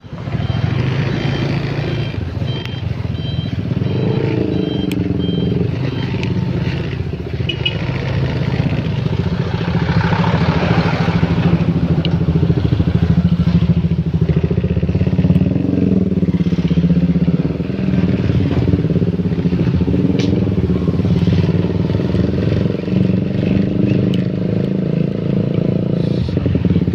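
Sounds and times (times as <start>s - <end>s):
motorcycle engine running: 0.0s - 26.9s.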